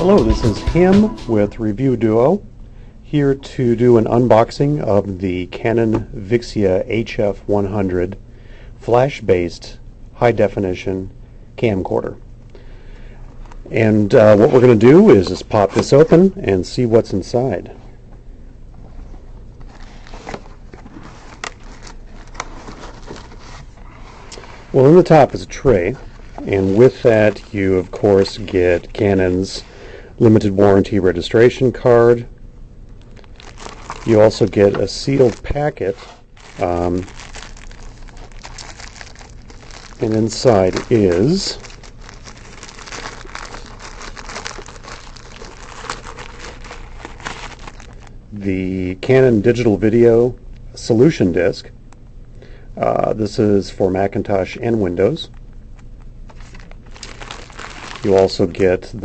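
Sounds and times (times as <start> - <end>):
cardboard packaging rustling: 19.6 - 25.2, 33.0 - 48.1, 56.3 - 58.6.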